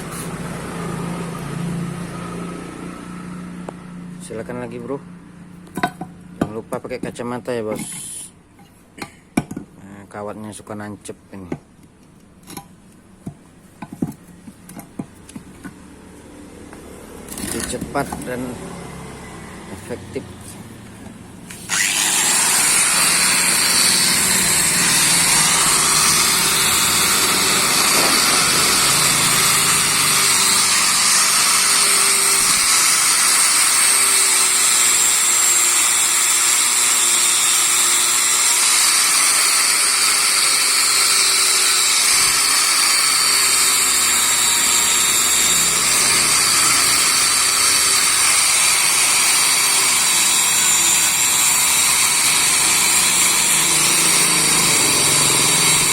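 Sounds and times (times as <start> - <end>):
wire brush grinder scraping metal: 0.0 - 1.0, 17.2 - 20.6, 21.4 - 55.9.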